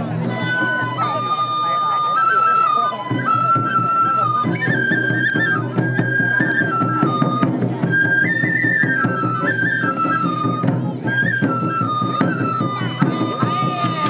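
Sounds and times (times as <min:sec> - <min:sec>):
bamboo flute melody: 0:00.0 - 0:14.0
quick drum beats: 0:03.0 - 0:14.0.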